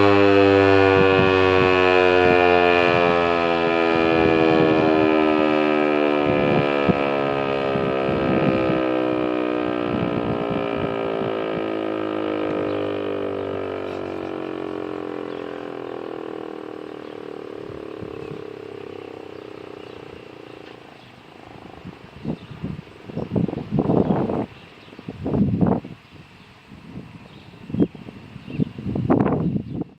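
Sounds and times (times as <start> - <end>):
warning siren winding down: 0.0 - 24.5.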